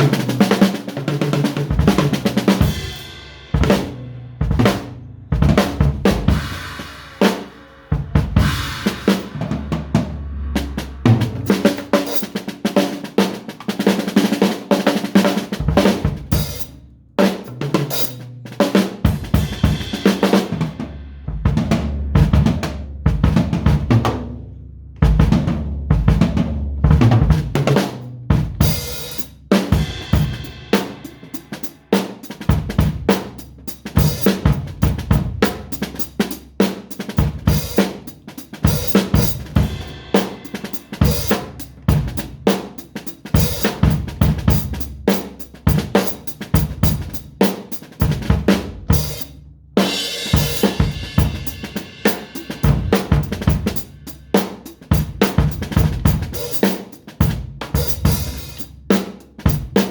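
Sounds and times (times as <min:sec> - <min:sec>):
drum kit playing: 0:00.0 - 0:59.9
cymbal wash: 0:06.0 - 0:13.2, 0:38.6 - 0:41.8.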